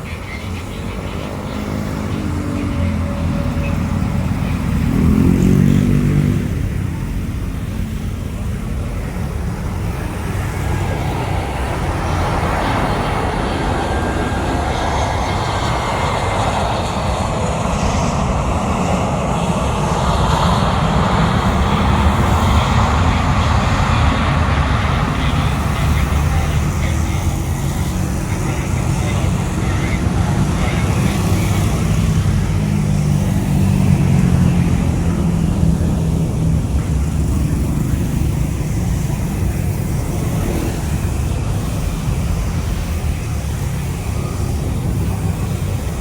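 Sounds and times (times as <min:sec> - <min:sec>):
jet airliner engine roar: 0:00.0 - 0:46.0
lower engine tone: 0:00.0 - 0:46.0.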